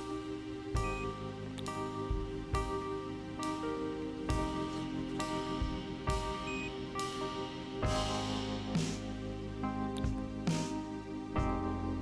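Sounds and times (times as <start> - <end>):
polyphonic phone ringtone: 0.8 - 1.9, 4.3 - 7.4.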